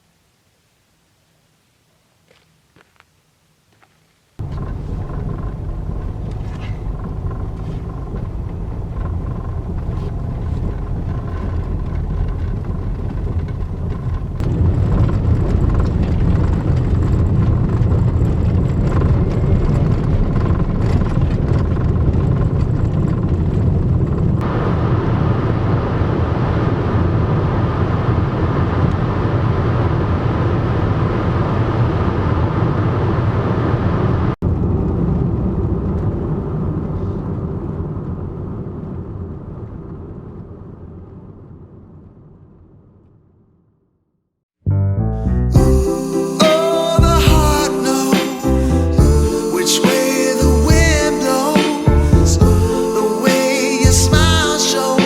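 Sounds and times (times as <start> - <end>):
van engine and road noise: 4.4 - 41.8, 47.0 - 49.5, 50.4 - 52.7, 53.8 - 54.6.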